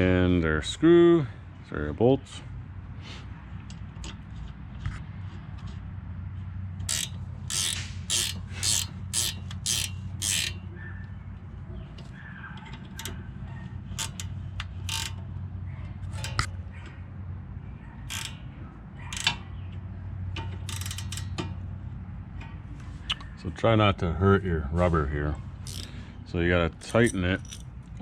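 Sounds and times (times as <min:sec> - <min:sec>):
metallic rasping strokes: 0:06.9 - 0:10.8, 0:25.6 - 0:26.0, 0:26.8 - 0:27.7
metal clicks and taps: 0:14.0 - 0:15.3, 0:16.1 - 0:17.0, 0:18.1 - 0:21.6.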